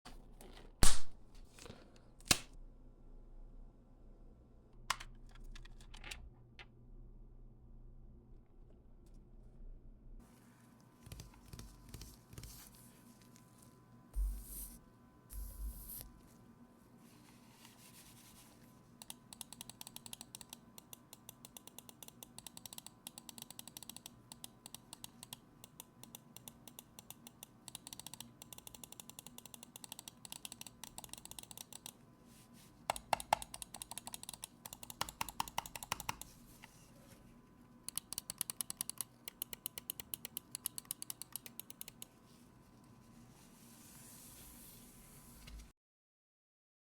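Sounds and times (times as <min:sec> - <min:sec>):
mechanical keyboard keystroke clicks: 0:19.0 - 0:32.0, 0:32.9 - 0:36.3, 0:37.9 - 0:42.1.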